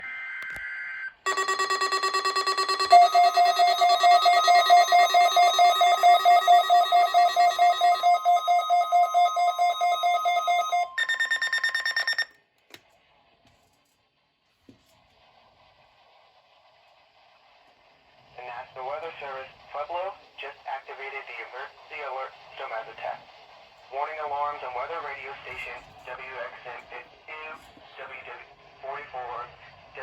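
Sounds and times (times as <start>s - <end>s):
rapid electronic alarm beeping: 1.3s - 12.3s.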